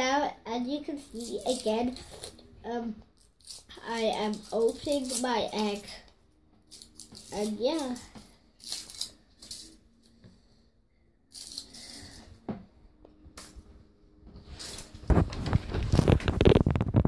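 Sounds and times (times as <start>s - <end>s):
foil wrapper crinkling: 1.2s - 2.4s, 3.2s - 5.8s, 8.6s - 9.7s.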